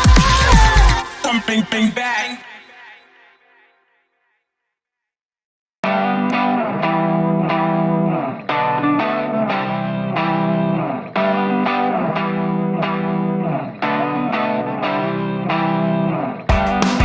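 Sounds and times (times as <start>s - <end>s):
effects-laden electric guitar: 5.8s - 17.0s.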